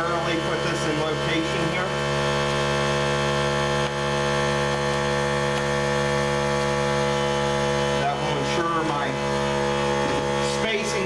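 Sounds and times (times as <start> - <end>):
steady multi-tone hum: 0.0 - 11.0.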